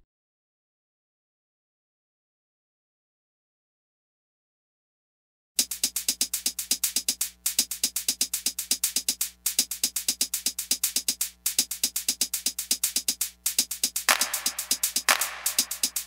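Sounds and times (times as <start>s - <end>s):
electronic music with drum-machine beat: 5.6s - 16.0s.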